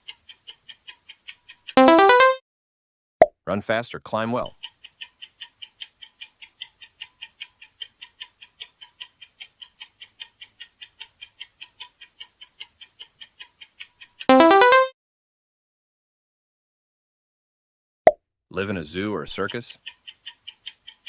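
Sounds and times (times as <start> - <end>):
countdown timer ticking: 0.0 - 2.4, 4.5 - 14.9, 19.3 - 21.0.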